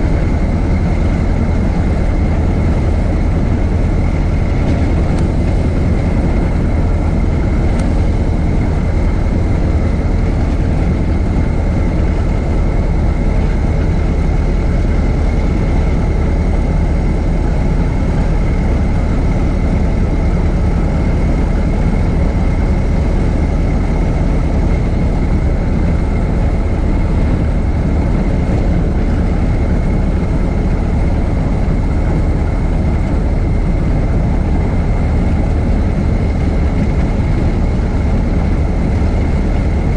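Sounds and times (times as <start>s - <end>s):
old car engine running: 0.0s - 39.9s.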